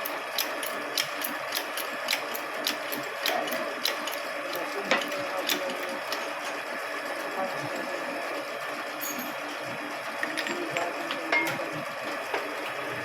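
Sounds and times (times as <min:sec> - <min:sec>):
sharp mechanical clicks: 0:00.0 - 0:06.2.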